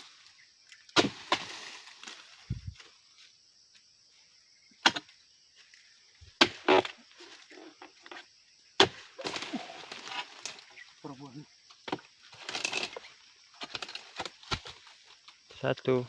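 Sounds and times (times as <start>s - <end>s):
fronds crackling and rustling: 0.0s - 3.8s, 8.9s - 15.7s
blade chopping palm fronds: 1.0s - 2.3s, 6.4s - 7.0s, 8.8s - 10.7s, 11.9s - 15.0s.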